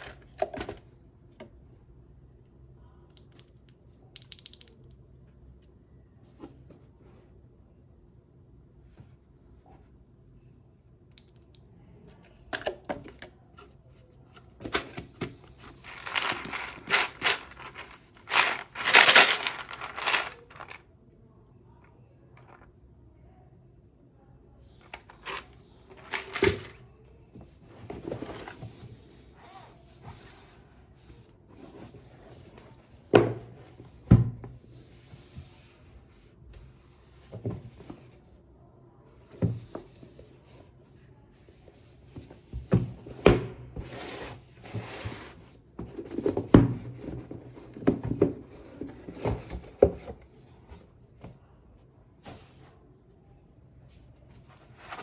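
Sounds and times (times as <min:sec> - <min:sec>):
packaging rustling: 0:15.7 - 0:20.8.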